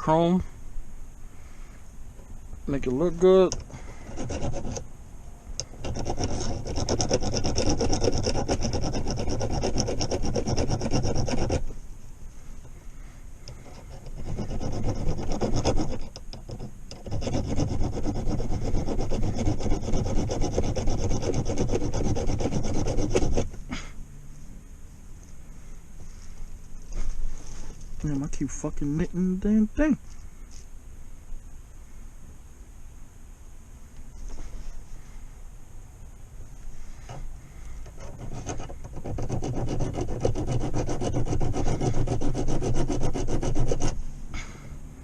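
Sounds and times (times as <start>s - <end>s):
hand rubbing on chrome: 2.8s - 4.9s, 5.6s - 23.8s, 25.1s - 28.1s, 36.5s - 44.1s.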